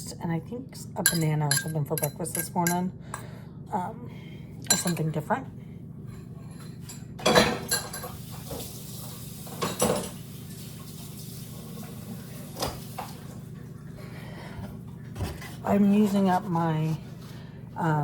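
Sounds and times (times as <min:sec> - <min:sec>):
dishes and cutlery clattering: 0:01.0 - 0:02.8, 0:06.2 - 0:08.7, 0:09.6 - 0:10.2.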